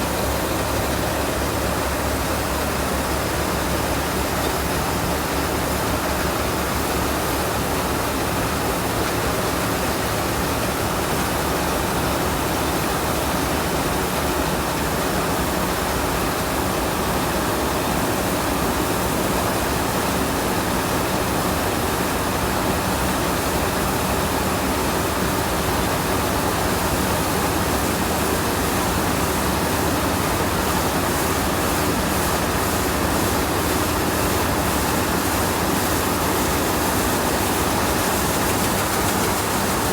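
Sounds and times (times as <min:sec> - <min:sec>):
combine harvester rushing noise: 0:29.0 - 0:39.9.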